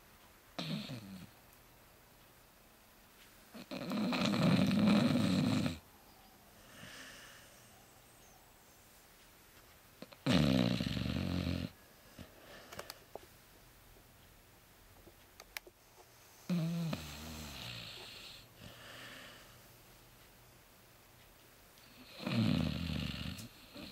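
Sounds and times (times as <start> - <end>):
dog snoring: 0.6 - 1.4, 3.5 - 5.8, 10.0 - 11.8, 16.4 - 19.0, 21.8 - 23.9
faint breath out: 6.5 - 8.0.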